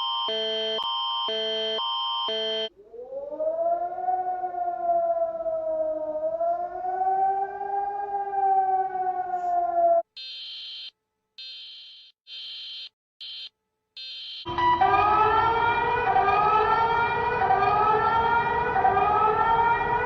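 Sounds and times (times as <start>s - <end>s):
two-tone alternating alarm: 0.0s - 2.7s
siren wail: 1.3s - 10.1s, 14.5s - 20.0s.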